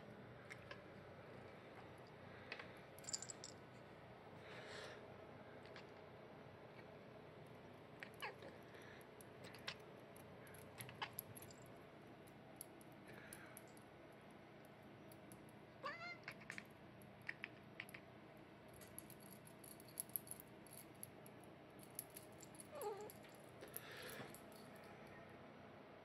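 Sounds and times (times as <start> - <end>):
cat meowing: 15.8 - 16.6.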